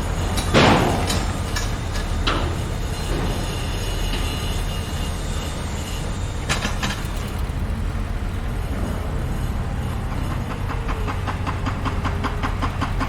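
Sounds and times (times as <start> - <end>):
heavy machinery engine rumble: 0.0 - 13.0
sharp knocks: 0.4 - 3.7.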